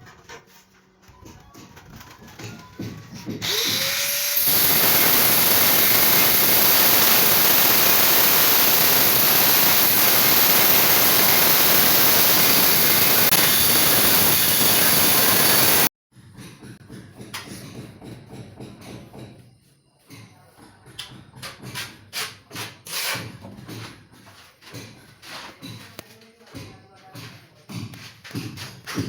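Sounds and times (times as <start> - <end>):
handheld power tool running: 3.4 - 15.9.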